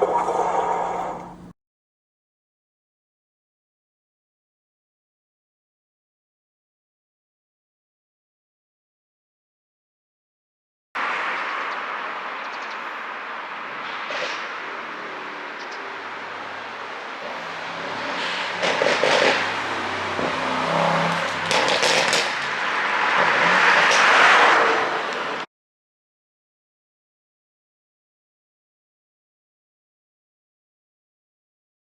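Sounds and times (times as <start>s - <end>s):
car exhaust running: 11.0s - 25.4s
exhaust crackling pops: 16.3s - 25.4s.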